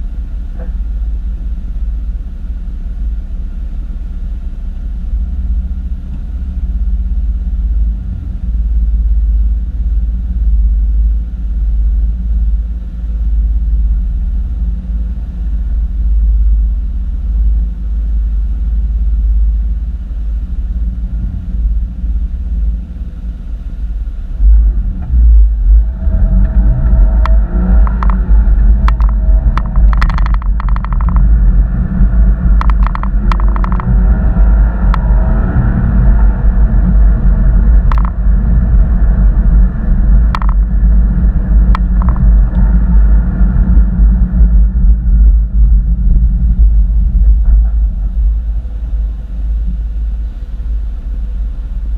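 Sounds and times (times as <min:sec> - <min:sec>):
car engine low rumble: 0:00.0 - 0:51.9
sharp clicks: 0:27.2 - 0:31.2, 0:32.6 - 0:33.9.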